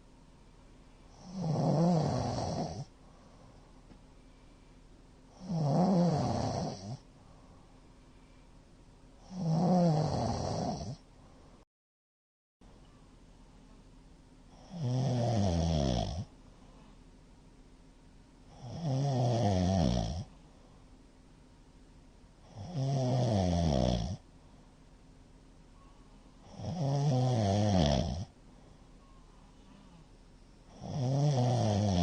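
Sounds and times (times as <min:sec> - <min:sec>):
man snoring loudly: 0:01.2 - 0:02.9, 0:05.4 - 0:07.0, 0:09.2 - 0:11.0, 0:14.6 - 0:16.3, 0:18.5 - 0:20.3, 0:22.5 - 0:24.2, 0:26.5 - 0:28.3, 0:30.7 - 0:32.0.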